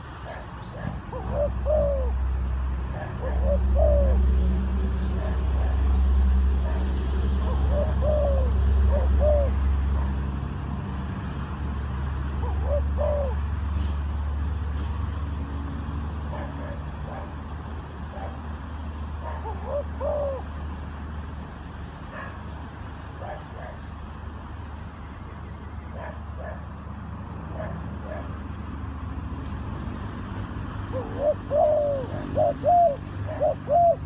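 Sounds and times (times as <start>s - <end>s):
dove cooing: 0.0s - 6.0s, 6.6s - 10.2s, 12.4s - 13.5s, 19.2s - 20.6s, 30.8s - 34.0s.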